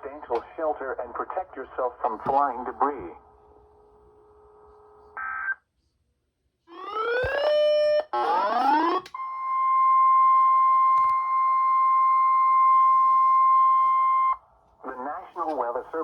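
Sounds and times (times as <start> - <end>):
steady alarm tone: 6.7 - 14.4.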